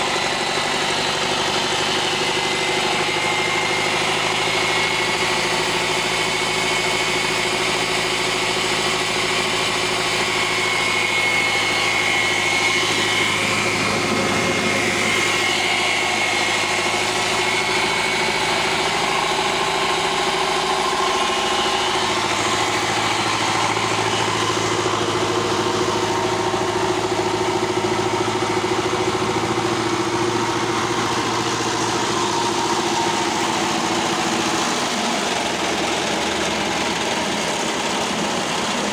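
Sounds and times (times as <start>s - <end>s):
tractor diesel engine running: 0.0s - 38.9s
high whine: 7.7s - 37.6s.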